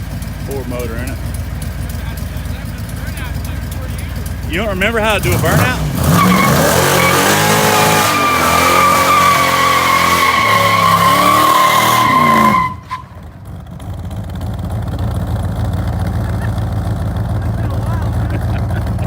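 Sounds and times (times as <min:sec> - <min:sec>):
car engine revving: 0:00.0 - 0:19.0
tyres squealing: 0:01.2 - 0:13.4.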